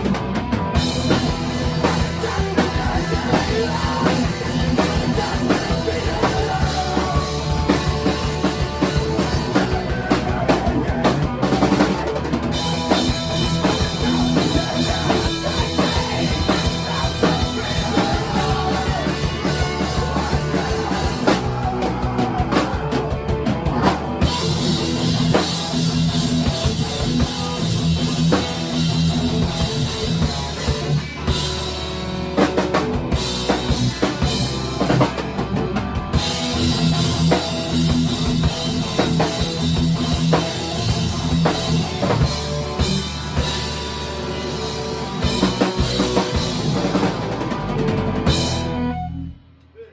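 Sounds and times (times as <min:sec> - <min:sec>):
drum kit beat: 0:00.0 - 0:49.0
rock music: 0:00.0 - 0:49.9.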